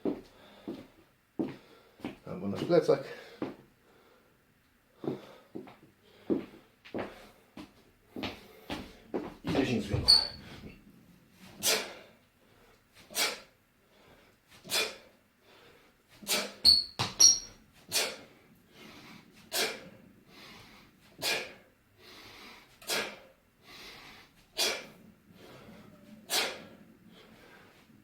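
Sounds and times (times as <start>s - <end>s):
quiet inhales: 5.0s - 9.1s, 18.0s - 28.0s
forceful exhalations: 11.4s - 12.2s, 17.9s - 27.9s
high ringing: 16.6s - 17.6s.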